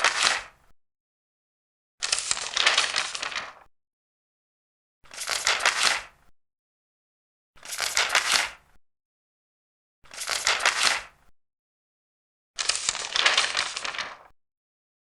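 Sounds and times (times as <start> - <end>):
paper pages turning: 0.0 - 0.5, 2.0 - 3.7, 5.1 - 6.1, 7.6 - 8.6, 10.1 - 11.1, 12.6 - 14.3.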